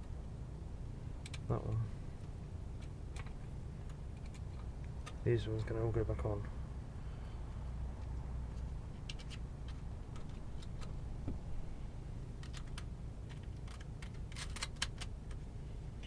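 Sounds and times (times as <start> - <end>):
low steady hum: 0.0 - 16.0
cable connectors clicking: 1.2 - 1.8, 12.4 - 15.4.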